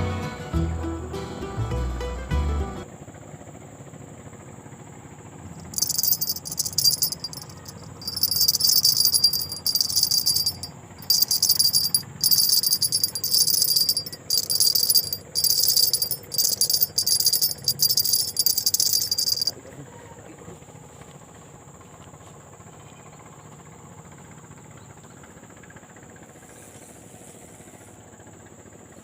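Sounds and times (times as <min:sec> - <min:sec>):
faint high insect whine: 0:05.6 - 0:19.5.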